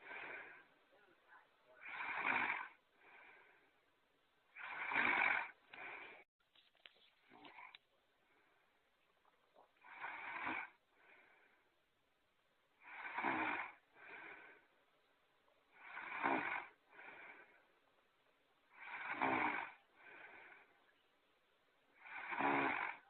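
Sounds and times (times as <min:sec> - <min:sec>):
snoring: 0:00.0 - 0:00.7, 0:01.7 - 0:03.6, 0:04.5 - 0:06.3, 0:07.3 - 0:07.8, 0:09.8 - 0:11.5, 0:12.8 - 0:14.7, 0:15.7 - 0:17.6, 0:18.7 - 0:20.8, 0:22.0 - 0:23.0.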